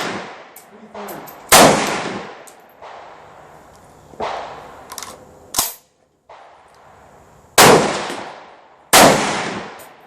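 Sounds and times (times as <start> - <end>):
faint shots: 0.0 - 3.2, 4.2 - 4.7, 7.6 - 10.0
rifle shots with echo: 0.0 - 3.2, 4.2 - 4.8, 7.6 - 10.0.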